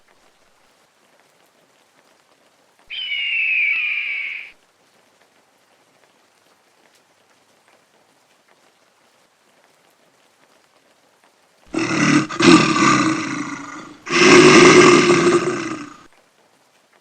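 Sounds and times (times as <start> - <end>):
faint outdoor hiss: 0.0 - 17.0
high animal call: 2.9 - 4.5, 11.8 - 16.0.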